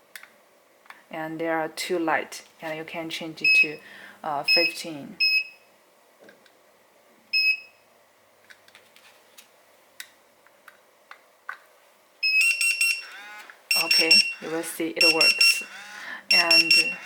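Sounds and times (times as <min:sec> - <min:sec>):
pager beeping: 0:12.2 - 0:17.0.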